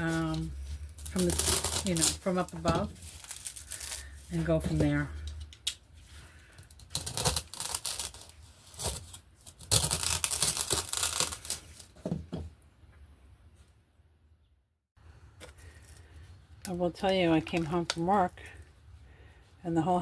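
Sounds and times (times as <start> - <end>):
craft materials tearing and rustling: 0.0 - 4.2, 6.7 - 11.9.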